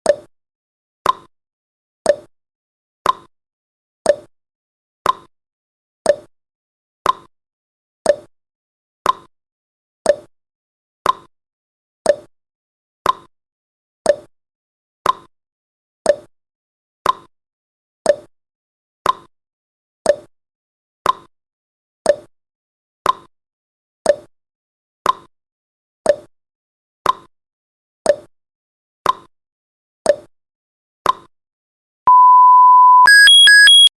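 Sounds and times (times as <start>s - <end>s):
fast high alarm beeping: 32.1s - 33.9s
steady beep: 32.1s - 33.9s.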